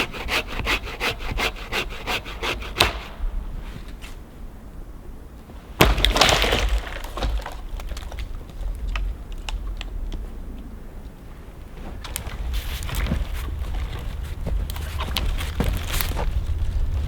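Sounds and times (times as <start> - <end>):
firewood cracking: 5.8 - 10.2, 12.0 - 17.0.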